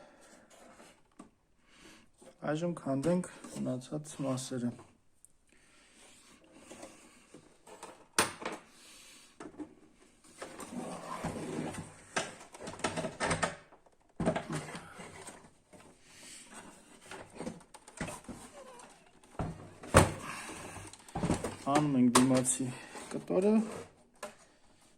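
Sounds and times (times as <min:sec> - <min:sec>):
plastic parts clicking and scraping: 0:09.4 - 0:24.6.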